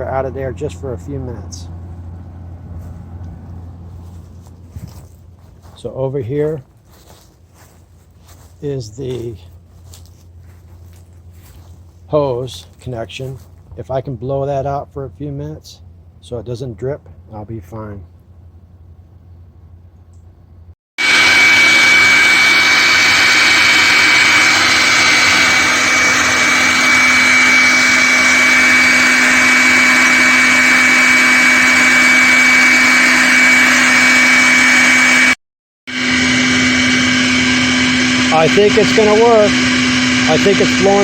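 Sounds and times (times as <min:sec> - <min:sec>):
electric blower running: 0:00.1 - 0:12.0, 0:21.0 - 0:41.0.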